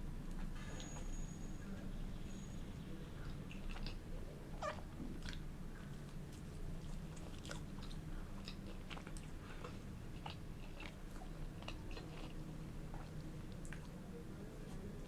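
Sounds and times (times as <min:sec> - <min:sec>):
low steady hum: 0:00.0 - 0:15.0
chewing crusty bread: 0:03.0 - 0:15.0.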